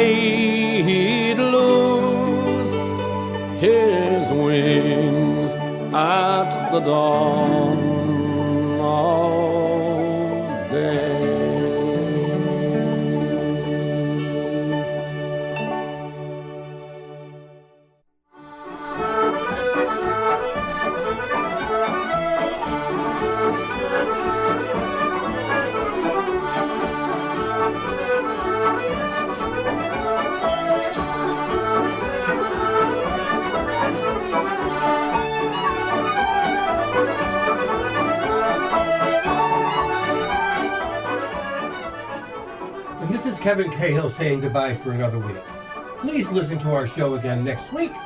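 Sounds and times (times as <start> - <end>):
accordion folk tune: 0.0 - 48.0.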